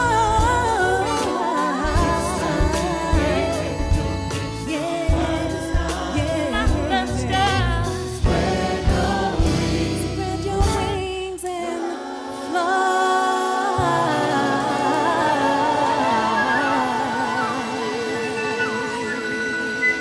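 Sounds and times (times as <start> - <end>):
bass and drums: 0.0 - 11.4
gospel choir singing: 0.0 - 20.0.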